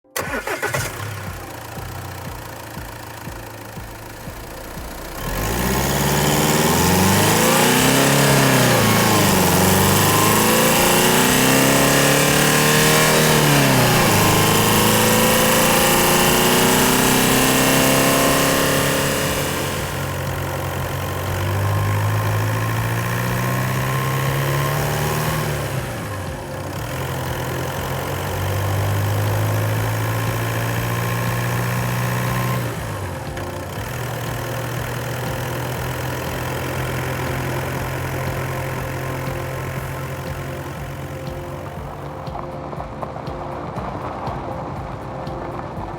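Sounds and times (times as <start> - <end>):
diesel engine revving: 0.0 - 45.9.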